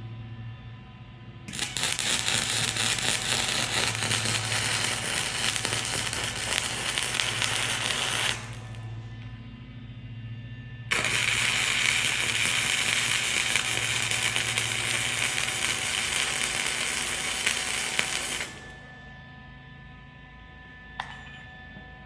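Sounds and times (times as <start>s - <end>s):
steady hum: 0.8s - 22.0s
welding arc crackling and hissing: 1.5s - 9.0s, 10.9s - 18.9s.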